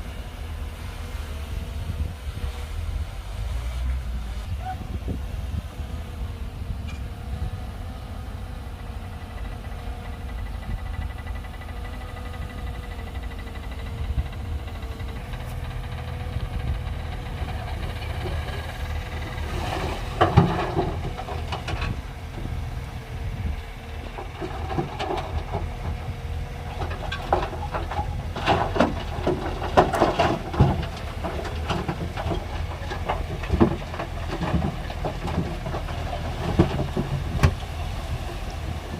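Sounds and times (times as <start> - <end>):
bulldozer diesel engine droning: 0.0 - 38.9
clanking and cracking: 19.4 - 22.0, 24.1 - 37.7.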